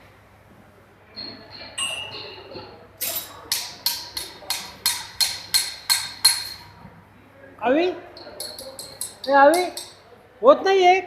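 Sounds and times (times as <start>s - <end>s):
welding machine metallic clanks: 3.0s - 6.6s.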